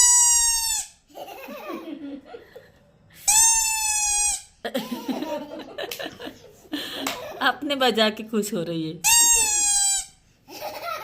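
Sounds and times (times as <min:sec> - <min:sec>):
squeeze toy squeak: 0:00.0 - 0:01.1, 0:03.2 - 0:04.6, 0:09.0 - 0:10.2.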